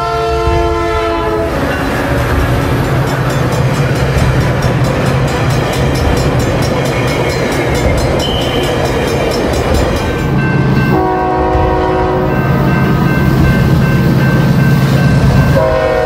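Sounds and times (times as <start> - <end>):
train horn chord: 0.0 - 2.9, 10.8 - 12.9, 15.4 - 16.0
train rumbling and rattling: 0.0 - 16.0.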